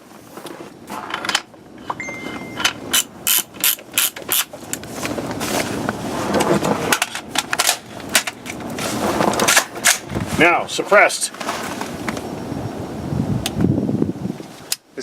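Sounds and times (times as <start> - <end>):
short steady tone: 2.0 - 2.8
metallic clicking and ratcheting: 2.6 - 4.5.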